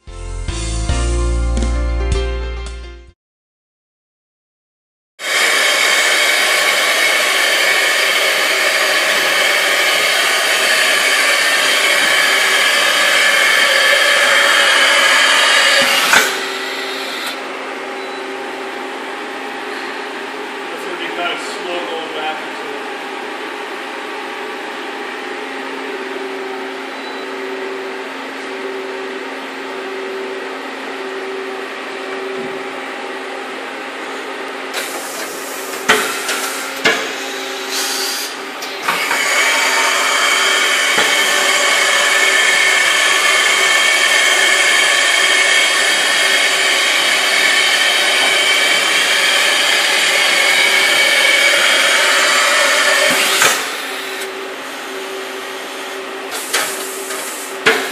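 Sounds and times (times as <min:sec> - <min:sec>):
machine hum with pulsing tone: 0:05.2 - 0:57.8
loud whirring whine: 0:05.2 - 0:57.9.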